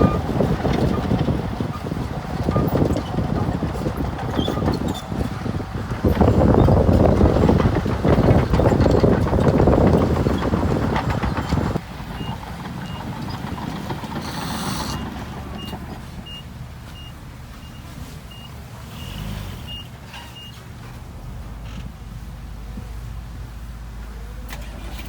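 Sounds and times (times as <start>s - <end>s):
heavy machine engine running: 0.0s - 17.2s
reversing alarm beeping: 14.2s - 16.4s.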